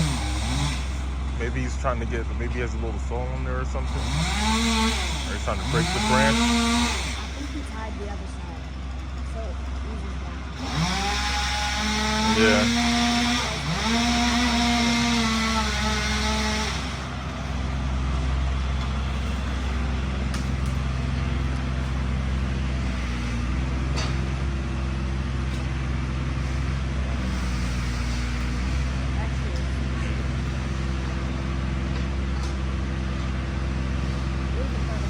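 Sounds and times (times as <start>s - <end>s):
small engine at high revs: 0.0s - 8.6s, 10.5s - 17.7s, 19.2s - 24.8s, 25.5s - 31.9s
low engine hum: 0.0s - 35.0s.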